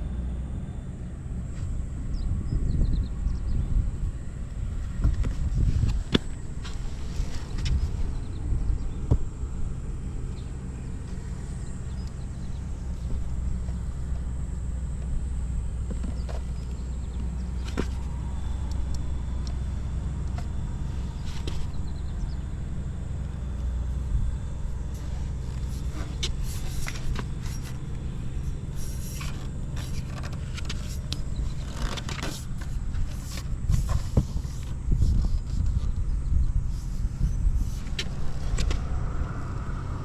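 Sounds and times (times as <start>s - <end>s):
motorcycle engine idling: 0.0s - 40.0s
clicks and scrapes: 28.7s - 35.8s.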